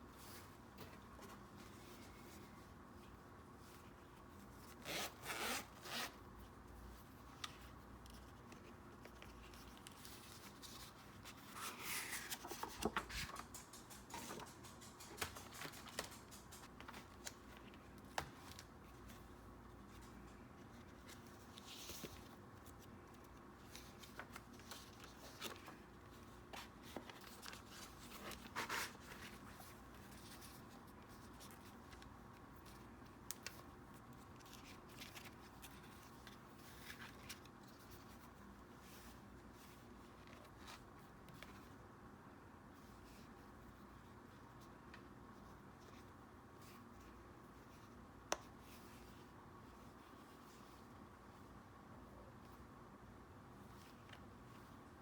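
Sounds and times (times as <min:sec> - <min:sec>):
packaging rustling and scraping: 0:09.2 - 0:17.4
small clicks and taps: 0:12.3 - 0:18.7.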